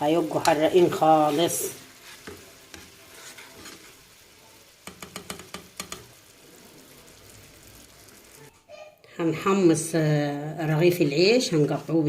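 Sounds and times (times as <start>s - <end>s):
sauce simmering and sizzling: 0.0s - 8.7s.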